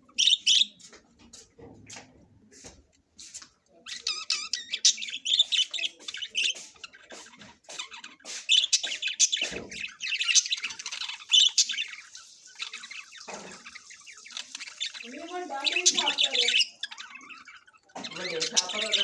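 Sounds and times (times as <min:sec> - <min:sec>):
parrots chattering and squawking: 0:00.0 - 0:19.0.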